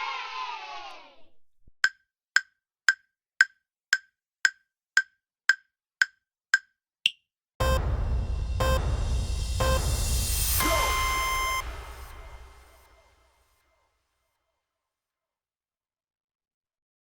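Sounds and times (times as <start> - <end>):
wood-block ticks: 1.8 - 7.3
crowd cheering: 10.6 - 12.8.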